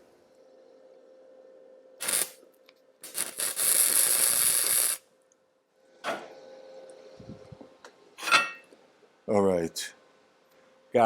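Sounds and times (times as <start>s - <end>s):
arc welding crackling: 2.0s - 5.1s.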